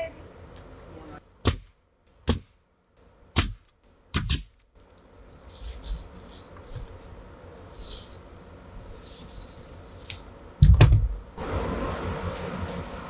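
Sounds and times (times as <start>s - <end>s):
sharp knocks: 1.4s - 2.6s
soft hissing: 5.3s - 10.4s.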